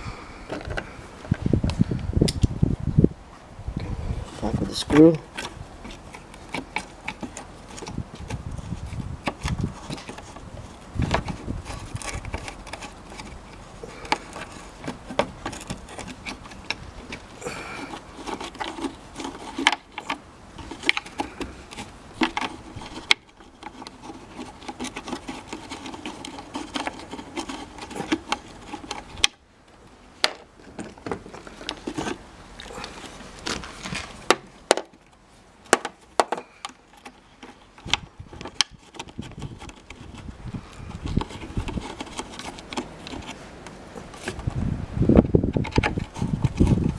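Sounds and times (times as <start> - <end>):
clicks and knocks of handling: 0.5 - 1.4, 4.8 - 44.6, 45.2 - 46.9.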